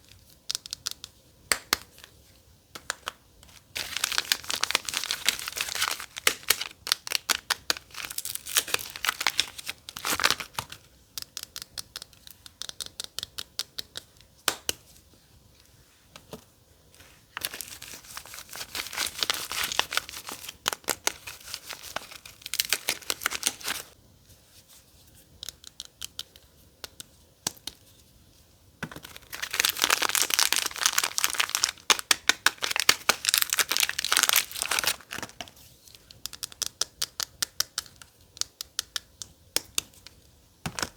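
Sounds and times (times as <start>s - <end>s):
packaging tearing and crinkling: 3.7s - 10.8s, 17.4s - 24.0s, 29.0s - 35.4s.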